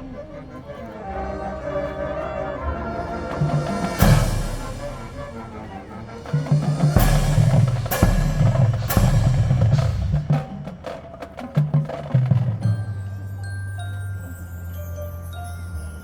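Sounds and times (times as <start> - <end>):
pitched low drums: 0.0 - 13.2
heavy accented drum hits: 6.3 - 10.8.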